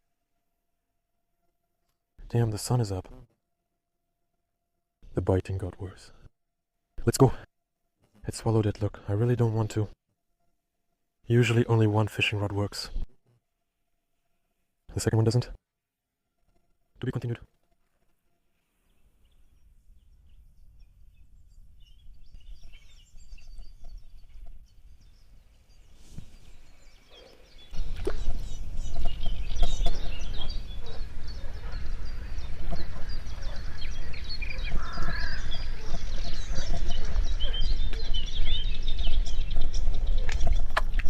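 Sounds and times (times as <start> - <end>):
birds chirping and singing: 18.9 - 41.0.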